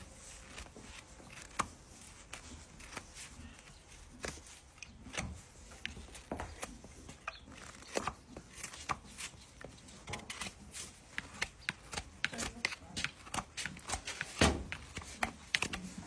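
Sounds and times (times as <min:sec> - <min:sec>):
hoof trimming clicks and snaps: 0:03.7 - 0:16.0.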